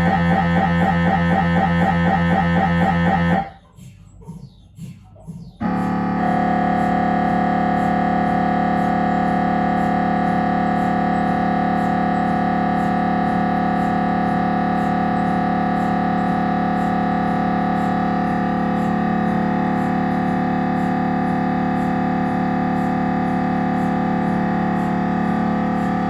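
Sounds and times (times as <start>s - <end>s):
falling electronic sweeps: 0.0s - 3.5s
mri scanner humming: 0.0s - 3.5s, 5.6s - 26.0s.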